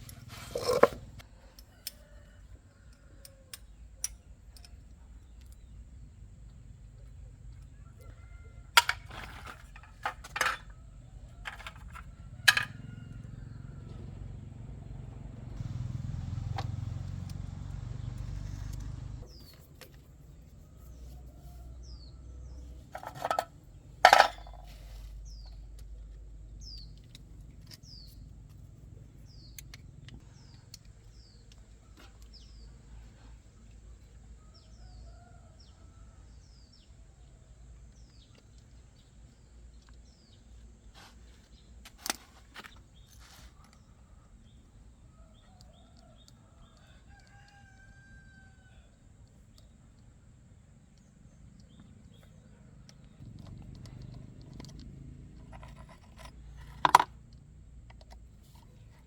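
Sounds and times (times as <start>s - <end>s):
hand tools knocking and clinking: 8.8s - 10.7s, 11.4s - 12.8s, 22.9s - 24.8s, 55.5s - 57.1s
small bird chirping: 24.5s - 37.0s.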